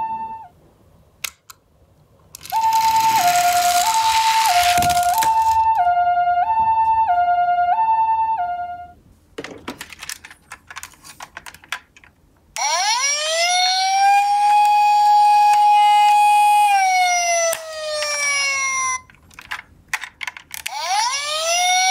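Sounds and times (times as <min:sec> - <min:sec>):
toy two-tone siren: 0:00.0 - 0:00.5, 0:02.4 - 0:08.9, 0:12.6 - 0:19.1, 0:20.6 - 0:21.9
wailing siren: 0:00.0 - 0:00.5, 0:02.4 - 0:09.0, 0:12.6 - 0:19.1, 0:20.6 - 0:21.9
light clicking and rattling: 0:09.4 - 0:12.5, 0:19.1 - 0:20.8.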